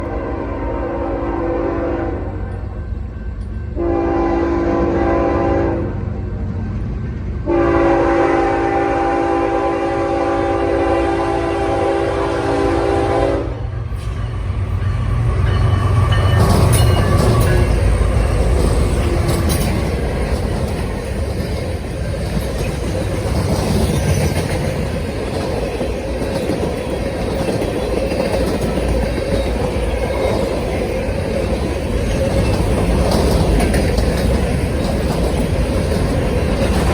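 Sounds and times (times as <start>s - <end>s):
locomotive horn blasts: 0.0s - 2.4s, 3.8s - 6.0s, 7.4s - 13.8s
locomotive engine rumble: 10.2s - 36.9s
freight cars with clicking wheels: 16.0s - 36.9s.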